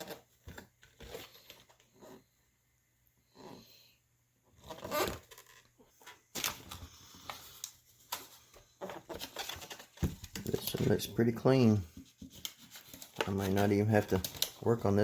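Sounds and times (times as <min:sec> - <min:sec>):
packaging rustling and crinkling: 0:04.6 - 0:15.0.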